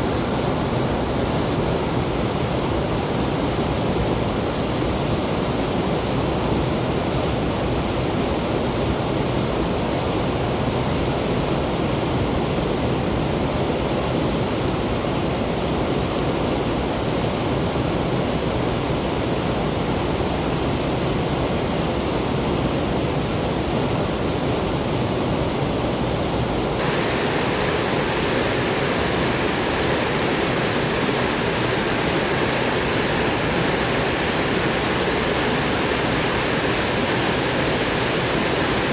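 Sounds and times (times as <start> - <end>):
waterfall rushing: 26.8 - 38.9.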